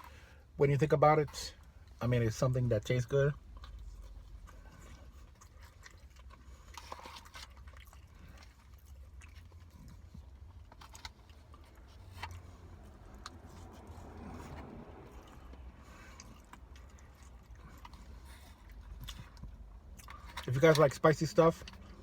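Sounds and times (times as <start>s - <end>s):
low steady hum: 0.0s - 22.0s
person chewing: 3.3s - 20.5s.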